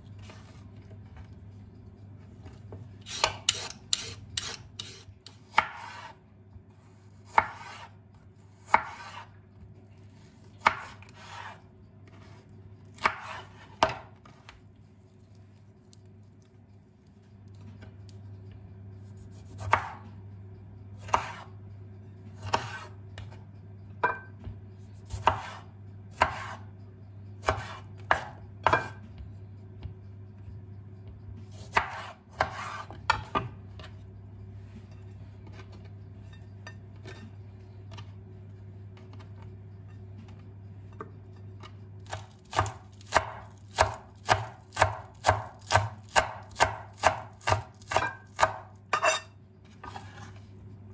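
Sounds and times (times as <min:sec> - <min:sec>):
steady low hum: 0:00.0 - 0:50.9
knife chopping on cutting board: 0:03.1 - 0:06.2, 0:07.2 - 0:07.9, 0:08.6 - 0:09.3, 0:10.6 - 0:11.6, 0:12.9 - 0:14.1, 0:19.4 - 0:20.0, 0:21.0 - 0:21.5, 0:22.4 - 0:23.4, 0:25.1 - 0:26.6, 0:27.4 - 0:29.0, 0:31.5 - 0:33.6, 0:42.0 - 0:50.3.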